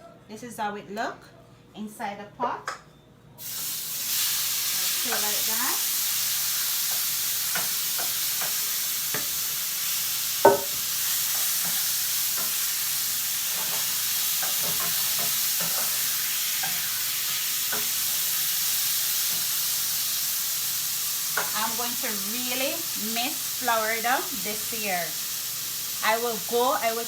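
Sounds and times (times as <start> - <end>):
chicken sizzling in a pot: 3.4 - 27.0
sharp knock: 10.4 - 10.8.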